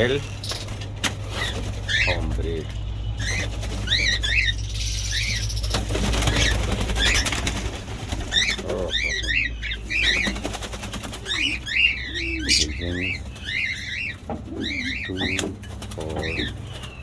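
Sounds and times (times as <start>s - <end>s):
parrots chirping shrilly: 0.0s - 17.0s
wings flapping: 0.2s - 17.0s.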